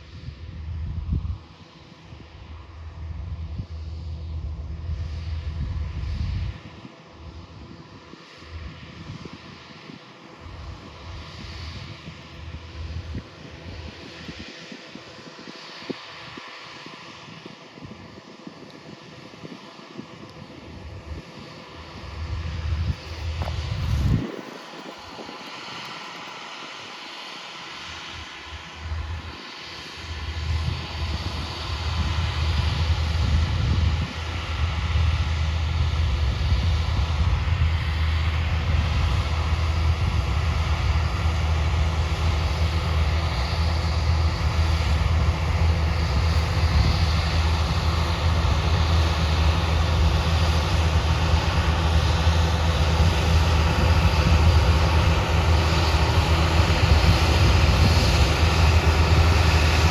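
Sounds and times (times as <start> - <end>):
vehicle engine rumbling: 21.8 - 26.9, 27.7 - 59.9.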